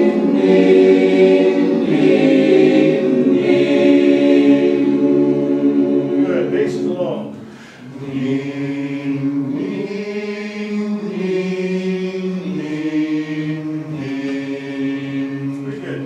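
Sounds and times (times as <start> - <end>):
chorus singing a cappella chords: 0.0 - 16.0.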